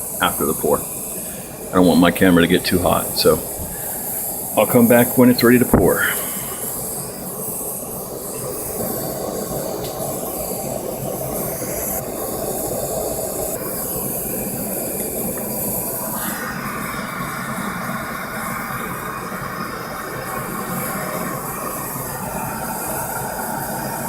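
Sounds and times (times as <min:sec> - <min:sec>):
gas burner flame roaring hiss: 0:00.0 - 0:24.0.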